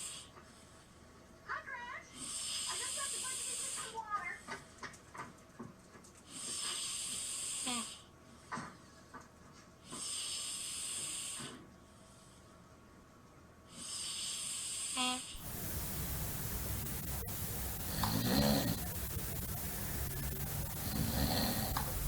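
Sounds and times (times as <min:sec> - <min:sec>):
hissing snoring breaths: 0:00.0 - 0:01.1, 0:02.1 - 0:04.7, 0:06.2 - 0:08.5, 0:09.8 - 0:12.4, 0:13.7 - 0:22.0.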